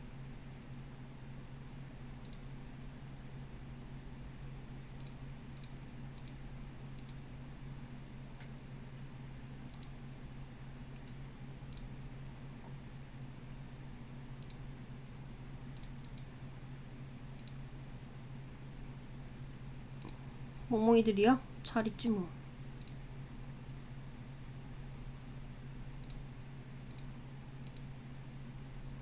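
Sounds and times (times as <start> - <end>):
low electrical hum: 0.0 - 29.0
computer mouse clicking: 2.2 - 2.5, 5.0 - 6.4, 7.0 - 7.2, 9.7 - 10.0, 10.9 - 11.9, 14.4 - 14.6, 15.8 - 16.3, 17.4 - 17.6, 20.0 - 20.2, 22.8 - 23.0, 26.0 - 26.2, 26.8 - 27.9.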